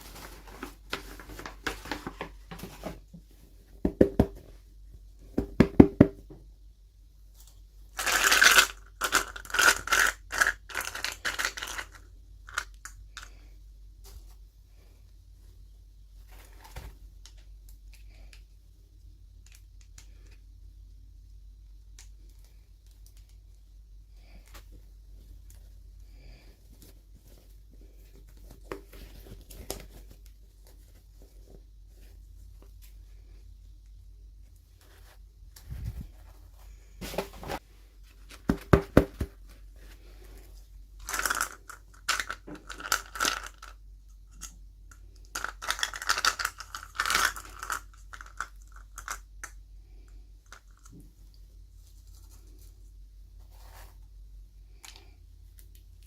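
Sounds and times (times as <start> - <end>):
packaging crinkling: 0.0 - 3.0, 8.0 - 12.7
packaging rustling and crinkling: 0.0 - 3.3, 34.8 - 43.6
taps and knocks on packaging: 3.8 - 4.4, 5.4 - 6.4, 38.5 - 39.4.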